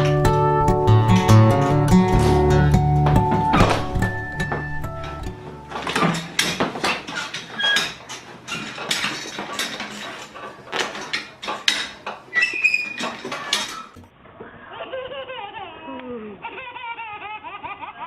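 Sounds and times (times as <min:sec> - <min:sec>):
hard objects clattering: 0:00.0 - 0:14.1
short high squeaks: 0:05.7 - 0:08.9, 0:11.5 - 0:14.0.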